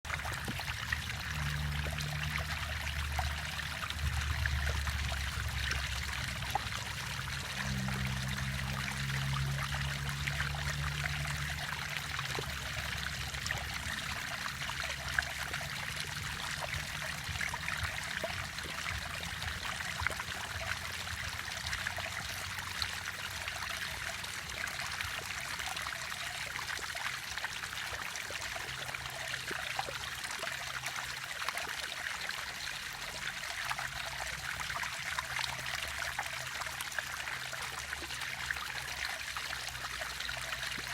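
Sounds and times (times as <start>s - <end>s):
low rumble: 0.2s - 22.7s.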